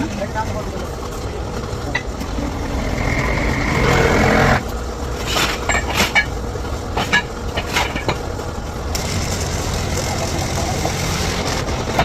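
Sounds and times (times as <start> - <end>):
steady low hum: 0.0 - 12.0
loud noisy sound: 1.4 - 4.8, 8.8 - 12.0.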